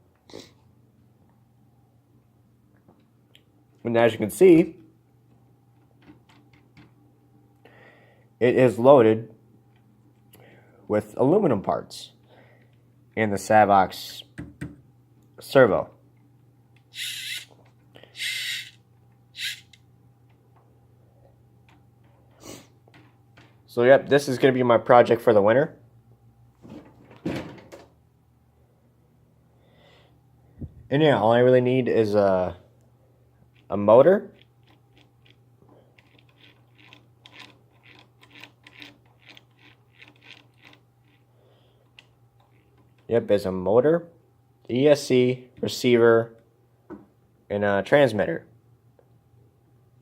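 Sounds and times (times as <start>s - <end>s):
low steady hum: 0.0s - 50.0s
small parts clicking and rustling: 16.8s - 18.8s, 19.4s - 20.4s, 34.3s - 43.1s.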